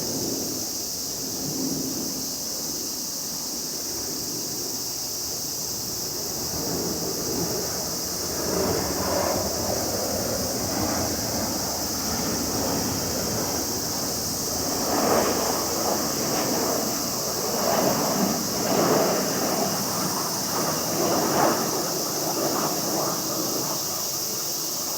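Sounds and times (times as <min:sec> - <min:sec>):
jet engines roaring: 0:05.7 - 0:24.9.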